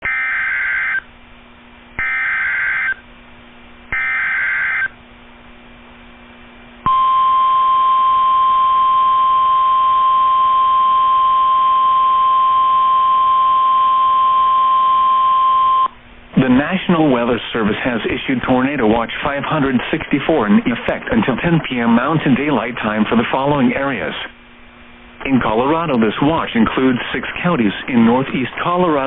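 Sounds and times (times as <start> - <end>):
screechy digital data bursts: 4.0 - 4.9.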